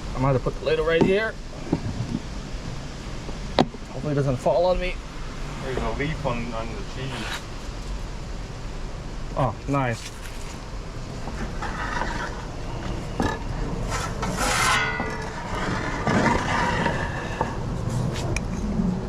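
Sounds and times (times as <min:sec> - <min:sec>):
wind buffeting microphone: 0:00.0 - 0:06.2.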